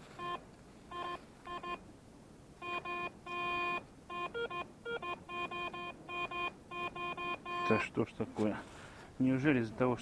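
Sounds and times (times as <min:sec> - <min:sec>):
metal detector beeps: 0:00.2 - 0:01.8, 0:02.6 - 0:07.9.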